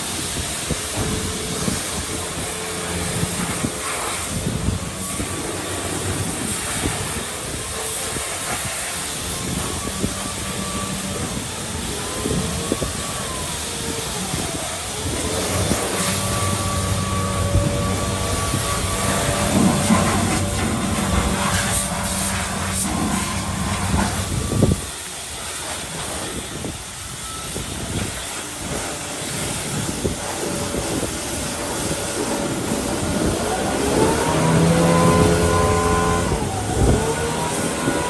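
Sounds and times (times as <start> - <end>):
engine humming: 0.0 - 25.0, 30.2 - 38.0.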